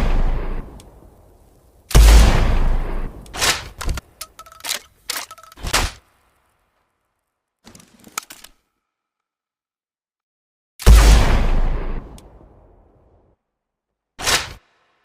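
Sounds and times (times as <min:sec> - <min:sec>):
shotgun blasts: 0:01.9 - 0:03.8, 0:10.8 - 0:12.2
gun action clacking: 0:03.5 - 0:05.8.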